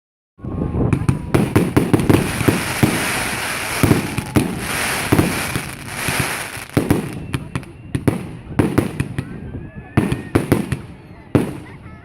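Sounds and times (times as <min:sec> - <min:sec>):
bonfire crackling and popping: 0:01.0 - 0:07.4
fire hissing: 0:01.7 - 0:07.2.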